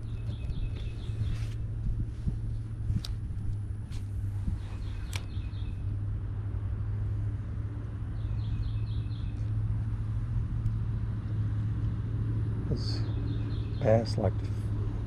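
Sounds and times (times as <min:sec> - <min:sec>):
bird chirping: 0:00.0 - 0:01.7, 0:04.4 - 0:06.0, 0:08.1 - 0:09.6, 0:12.7 - 0:14.6
road traffic rumble: 0:00.0 - 0:15.0.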